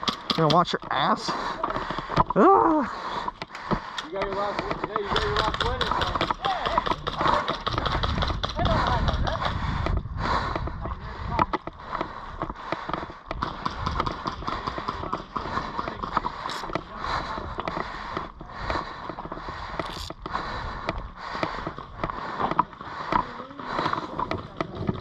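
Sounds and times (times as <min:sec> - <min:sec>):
footsteps: 0:09.8 - 0:25.0.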